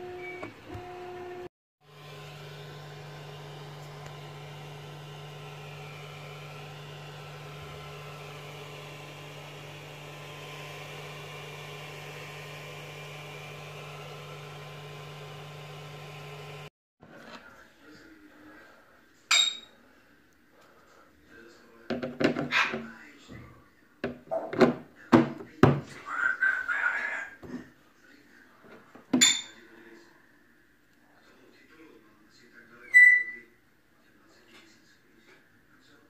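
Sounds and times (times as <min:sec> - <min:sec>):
printer motor hum: 0:00.0 - 0:16.7
stepper motor whines: 0:00.0 - 0:16.7.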